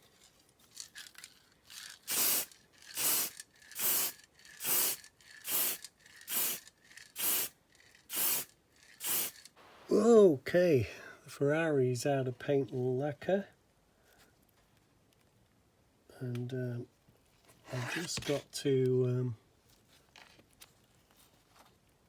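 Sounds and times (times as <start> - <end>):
spray can hissing bursts: 2.1 - 7.5, 8.1 - 9.5.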